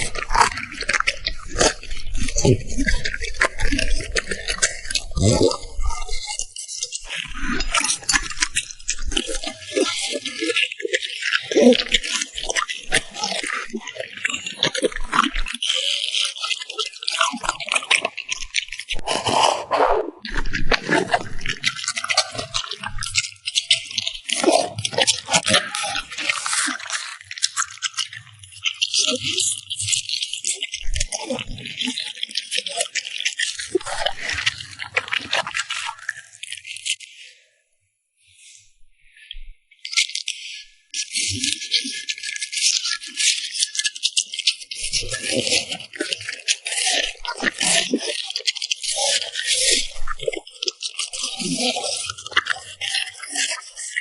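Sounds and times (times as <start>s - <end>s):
dog crunching food: 0.1s - 3.9s.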